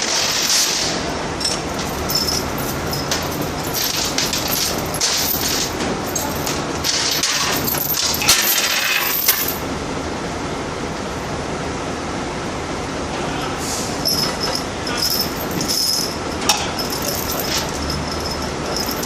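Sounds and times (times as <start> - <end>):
heavy machine noise: 0.0 - 10.3, 13.0 - 19.0
metal clinking and rattling: 1.4 - 9.6, 14.0 - 19.0.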